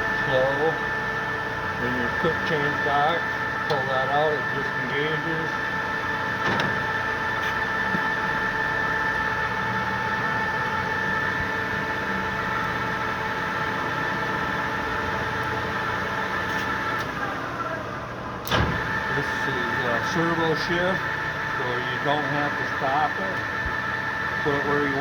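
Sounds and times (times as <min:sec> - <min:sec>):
lathe whining and humming: 0:00.0 - 0:25.0.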